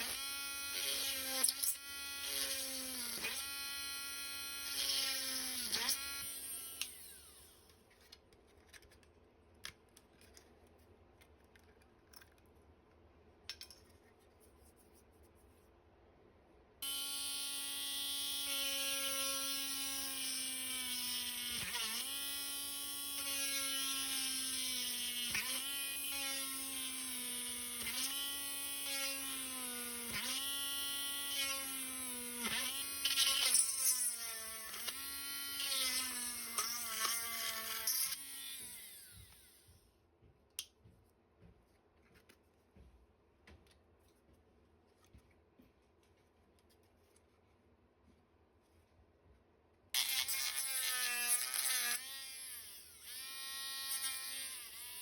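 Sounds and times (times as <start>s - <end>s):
power tool motor whine cutting: 0.0s - 7.6s, 16.8s - 39.7s, 50.0s - 55.0s.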